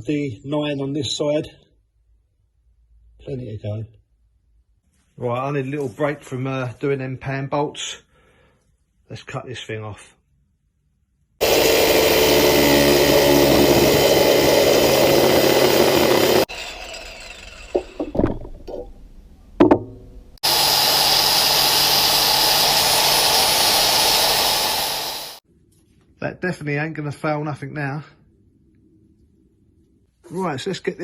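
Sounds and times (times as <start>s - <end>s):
power tool cutting metal: 11.4s - 18.2s, 20.4s - 25.4s
knocks: 17.7s - 18.9s, 19.6s - 20.2s.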